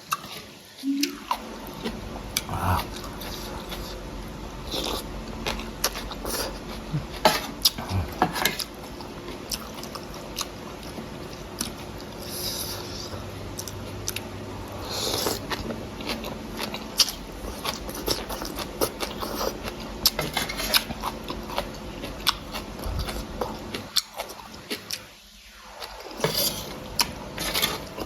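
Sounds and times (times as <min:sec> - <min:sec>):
chewing and wet mouth noises: 0:04.6 - 0:25.2.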